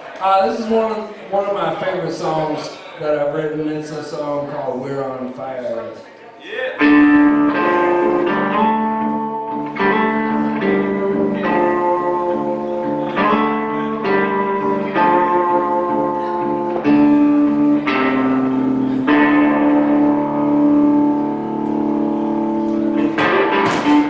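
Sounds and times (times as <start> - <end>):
guitar chords ringing: 6.8 - 24.0.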